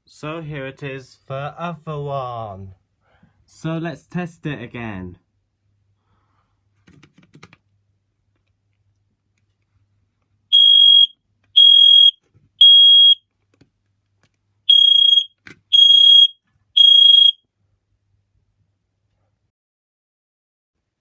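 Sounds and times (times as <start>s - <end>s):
smoke alarm beeps: 10.5s - 13.2s, 14.7s - 17.4s.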